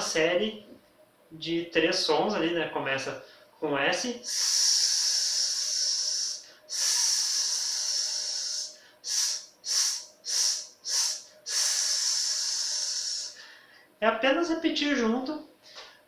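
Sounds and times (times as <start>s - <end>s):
man hissing: 4.2s - 13.6s.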